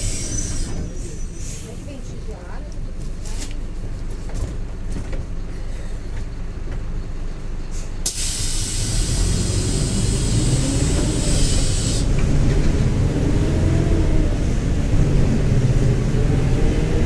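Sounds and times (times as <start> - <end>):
diesel bus engine running: 0.0 - 17.0
compressed air hiss: 7.7 - 12.1.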